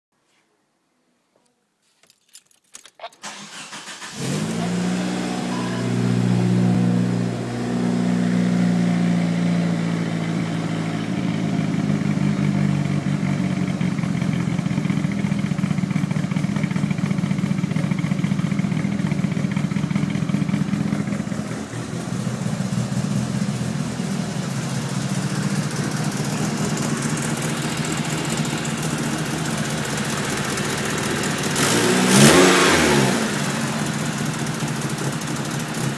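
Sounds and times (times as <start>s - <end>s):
car engine cranking and idling rough: 2.8s - 35.9s.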